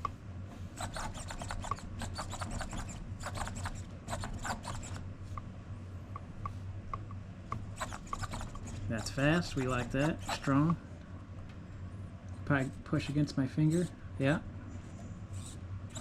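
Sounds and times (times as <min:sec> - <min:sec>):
steering servo whirring and clicking: 0:00.8 - 0:05.0, 0:07.5 - 0:10.8, 0:15.4 - 0:16.0.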